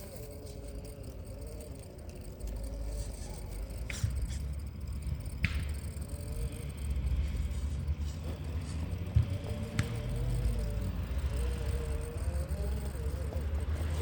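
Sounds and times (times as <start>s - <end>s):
toy truck motor whining: 0.0s - 14.0s
toy truck knocking on terrain: 2.5s - 7.2s, 7.8s - 14.0s.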